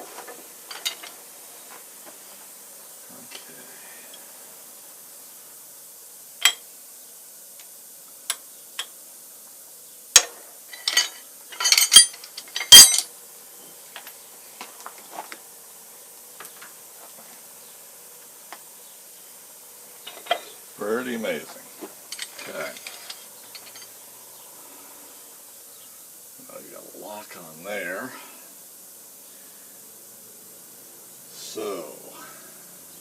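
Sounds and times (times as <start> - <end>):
metal parts clanking: 10.7 - 13.1, 22.1 - 23.9.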